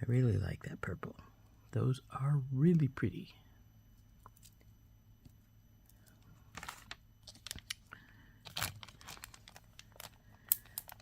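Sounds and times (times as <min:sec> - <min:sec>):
plastic packaging crinkling: 0:06.5 - 0:11.0.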